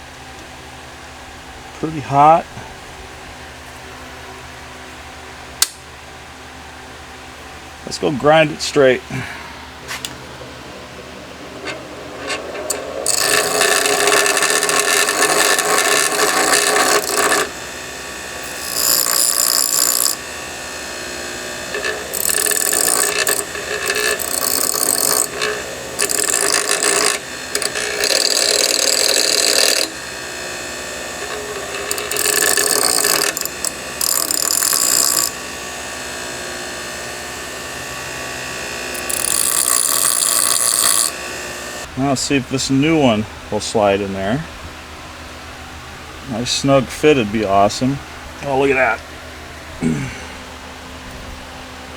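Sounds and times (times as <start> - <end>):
power grinder grinding metal: 11.2 - 41.9.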